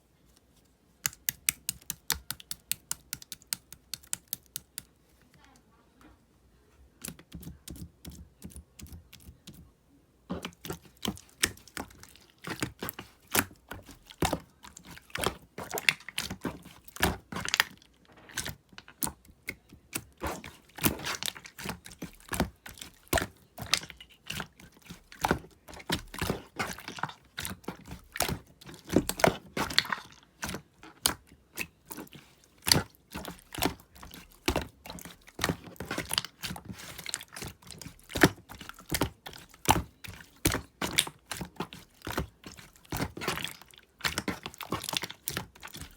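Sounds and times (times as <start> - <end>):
slime clicking and popping: 1.0 - 4.9.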